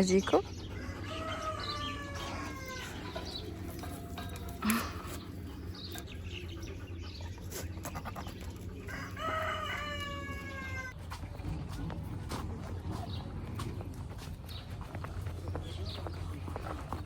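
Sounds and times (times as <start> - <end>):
rooster crowing: 0.8 - 3.1, 8.9 - 10.9.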